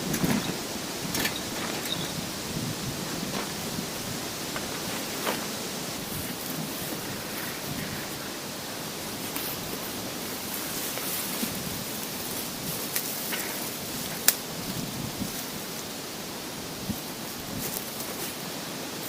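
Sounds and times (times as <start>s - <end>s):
strong wind on microphone: 0.0s - 10.4s, 13.6s - 15.8s, 16.5s - 17.8s.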